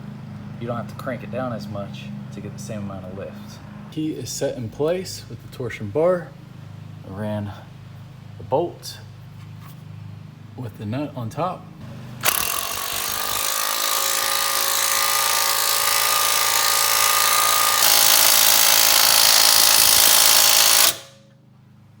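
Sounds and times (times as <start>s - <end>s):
impact wrench running: 11.8s - 21.2s.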